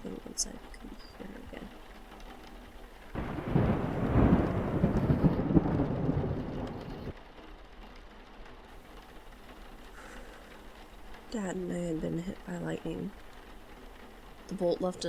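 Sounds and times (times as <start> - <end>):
thunder rumbling: 2.6 - 7.2.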